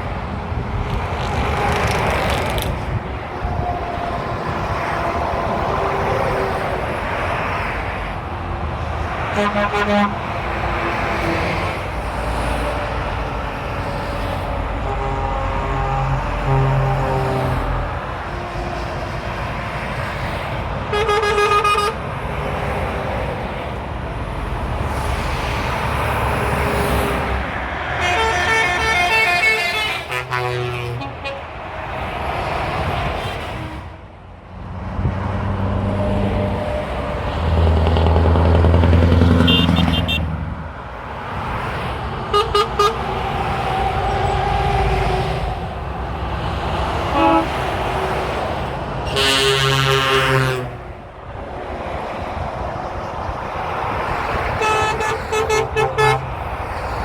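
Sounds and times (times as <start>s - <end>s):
motorway traffic droning: 0.0s - 57.0s
truck horn: 9.2s - 11.4s, 14.7s - 19.2s, 20.8s - 22.1s, 27.9s - 31.6s, 38.0s - 40.4s, 42.3s - 43.2s, 47.1s - 48.1s, 49.0s - 50.9s, 54.5s - 56.6s.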